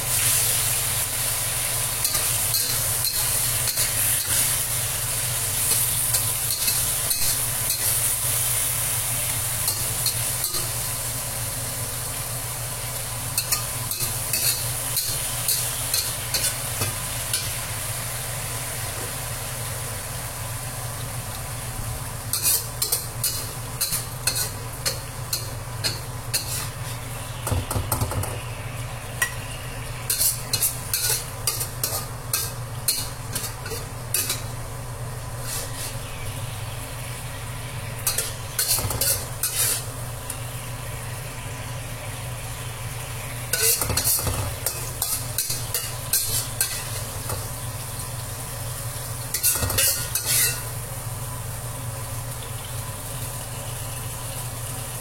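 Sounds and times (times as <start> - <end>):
food sizzling in a pan: 0.0 - 55.0
utensil scraping a pan: 22.3 - 27.1, 30.1 - 34.4, 35.4 - 36.1, 38.1 - 39.9, 43.5 - 47.1, 49.3 - 50.7.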